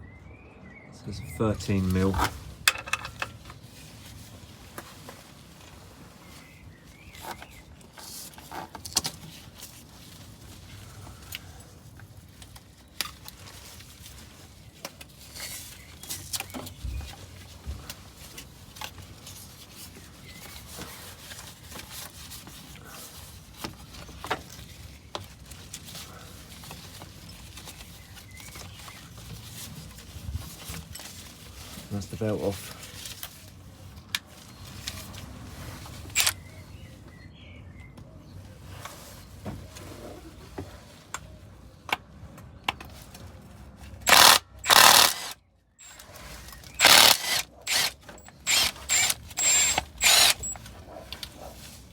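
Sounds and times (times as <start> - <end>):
hand tool clicking on metal: 44.1 - 46.0, 46.8 - 50.6.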